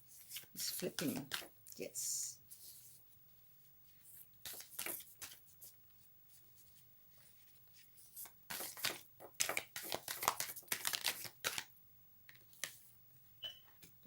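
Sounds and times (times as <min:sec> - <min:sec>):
cards being shuffled: 0:00.2 - 0:01.5, 0:04.2 - 0:05.7, 0:07.7 - 0:11.7, 0:12.4 - 0:12.9.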